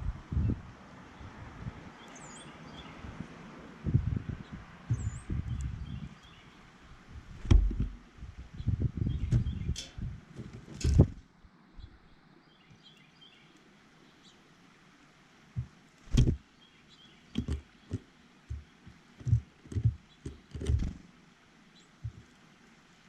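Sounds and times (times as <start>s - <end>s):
small birds chirping: 1.2s - 3.2s, 3.9s - 10.1s, 11.6s - 14.6s, 15.5s - 22.7s
low thumps and knocks: 7.3s - 11.2s, 15.6s - 16.4s, 17.3s - 21.1s, 22.0s - 22.3s.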